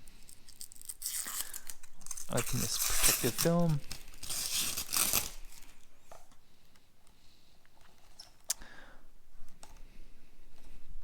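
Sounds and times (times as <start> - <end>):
plastic film crinkling: 0.0 - 6.4.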